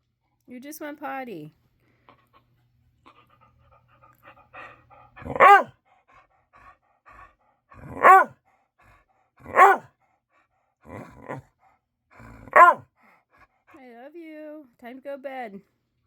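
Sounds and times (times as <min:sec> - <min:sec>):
soft dog sounds: 0:02.0 - 0:05.8, 0:07.8 - 0:08.4, 0:09.5 - 0:09.9, 0:12.2 - 0:12.9
dog barking: 0:05.2 - 0:05.8, 0:07.8 - 0:08.4, 0:09.5 - 0:09.9, 0:12.5 - 0:12.9.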